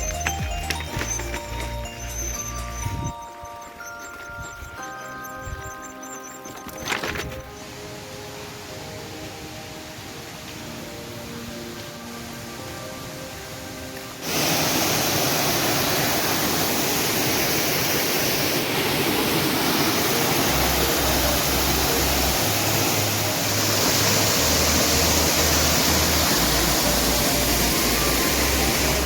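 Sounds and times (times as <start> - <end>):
waterfall rushing: 7.4 - 29.0.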